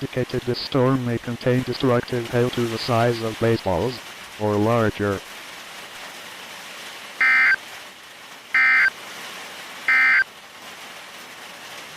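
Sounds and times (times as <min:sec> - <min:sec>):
rain-like hiss: 0:00.0 - 0:11.9
electronic data bursts: 0:07.2 - 0:07.6, 0:08.6 - 0:08.9, 0:09.9 - 0:10.2.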